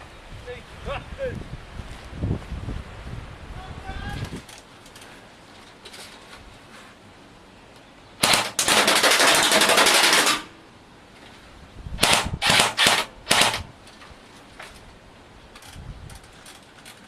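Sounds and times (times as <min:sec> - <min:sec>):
airsoft gun firing bursts: 0:08.2 - 0:10.6, 0:12.0 - 0:13.7.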